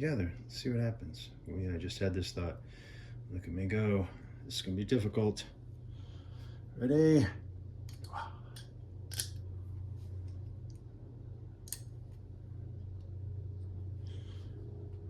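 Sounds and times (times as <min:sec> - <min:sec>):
low hum: 0:00.0 - 0:15.0
butterfly knives clicking: 0:07.9 - 0:09.4, 0:11.6 - 0:11.9.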